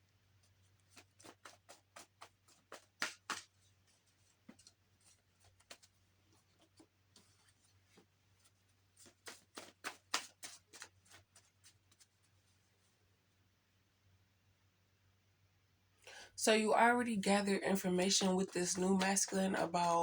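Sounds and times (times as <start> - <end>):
cards shuffling and flicking: 0.9 - 3.7, 9.0 - 12.0.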